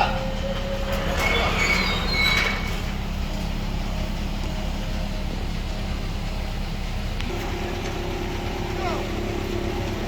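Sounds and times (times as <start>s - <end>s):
car driving low drone: 2.7s - 10.0s.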